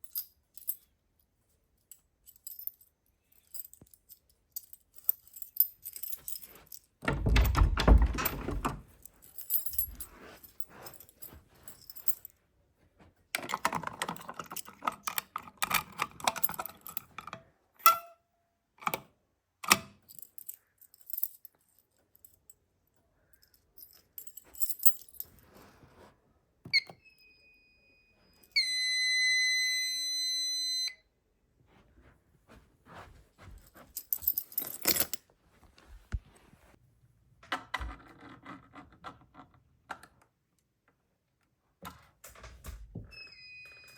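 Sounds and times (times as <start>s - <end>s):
clicks and rattling handling noises: 3.4s - 12.3s, 13.4s - 18.1s, 33.4s - 36.3s
short electronic beep: 26.8s - 31.0s.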